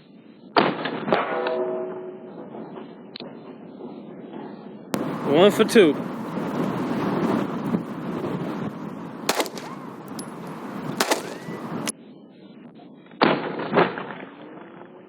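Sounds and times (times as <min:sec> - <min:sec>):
wind noise: 0:05.0 - 0:11.9
pistol shots: 0:09.3 - 0:11.9.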